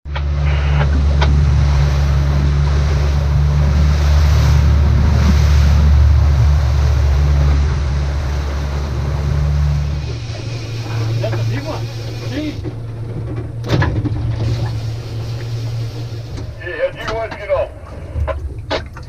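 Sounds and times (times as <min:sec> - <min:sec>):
boat engine humming: 0:00.0 - 0:19.0
water rushing past hull: 0:00.1 - 0:19.0
wind buffeting microphone: 0:00.8 - 0:14.8.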